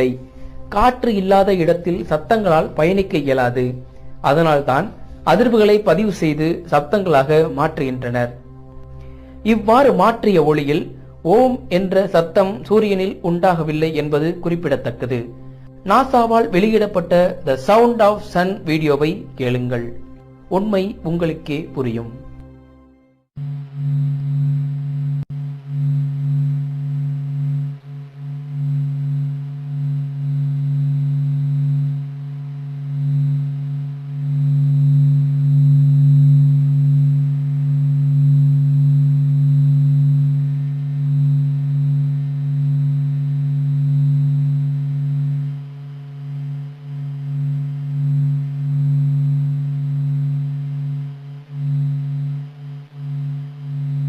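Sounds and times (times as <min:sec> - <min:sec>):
steady low drone: 0:00.0 - 0:54.0
faint overtone: 0:23.4 - 0:54.0.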